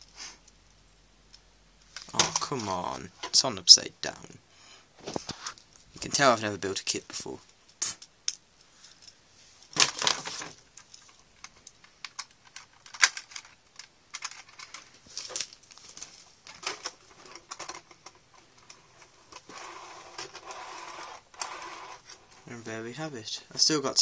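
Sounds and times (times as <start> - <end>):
plastic parts rattle: 1.9 - 3.4, 8.8 - 22.6
plastic parts clicking and tapping: 9.0 - 22.4.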